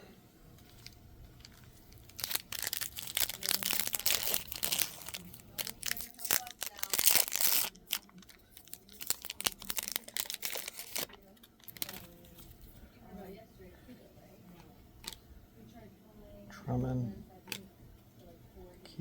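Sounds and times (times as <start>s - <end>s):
cards being handled: 0.6s - 12.6s
card pack wrapper tearing and crinkling: 0.7s - 12.3s.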